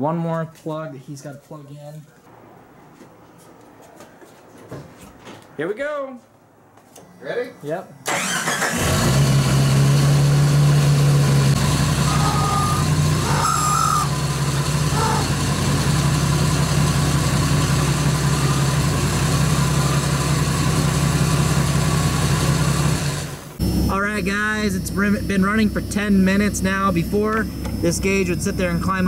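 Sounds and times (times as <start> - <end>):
car engine starting and idling: 8.0 - 29.0.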